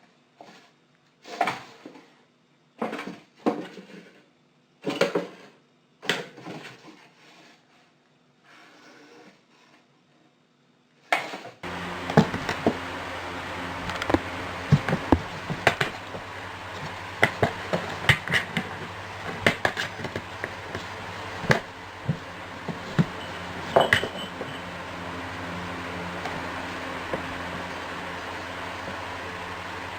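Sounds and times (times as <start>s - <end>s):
steady low hum: 11.6s - 29.9s.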